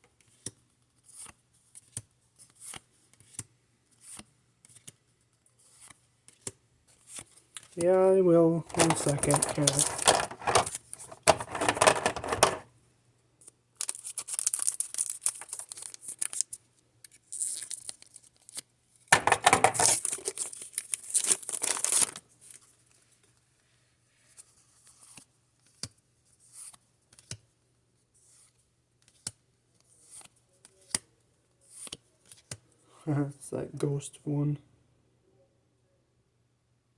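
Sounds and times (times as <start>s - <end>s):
card packaging tearing and crinkling: 8.6s - 12.6s, 13.8s - 16.6s, 17.2s - 18.6s, 19.2s - 22.2s.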